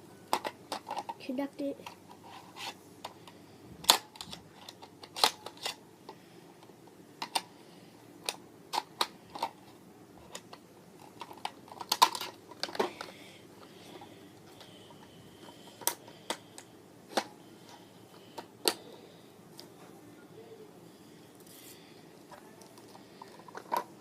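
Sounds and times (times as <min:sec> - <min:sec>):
sharp plastic snaps: 0:03.0 - 0:05.8
plastic toy parts clicking: 0:03.8 - 0:05.8, 0:10.3 - 0:13.1.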